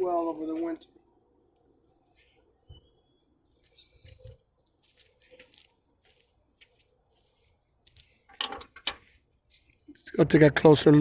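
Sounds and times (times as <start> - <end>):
scratchy rustling and crunching: 4.6 - 8.3.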